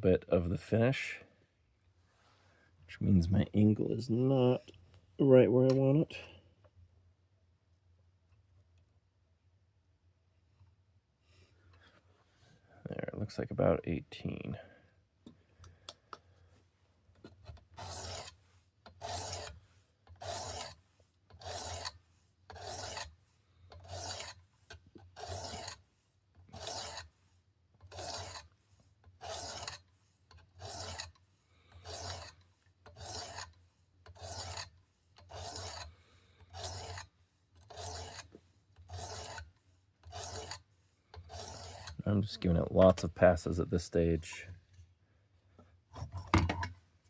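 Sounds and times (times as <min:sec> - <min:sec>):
sharpening stone rasping on knife: 0:17.8 - 0:19.6, 0:20.2 - 0:20.8, 0:21.4 - 0:23.2, 0:23.8 - 0:25.9, 0:26.5 - 0:27.2, 0:27.8 - 0:28.6, 0:29.2 - 0:31.2, 0:31.8 - 0:35.9, 0:36.5 - 0:42.0.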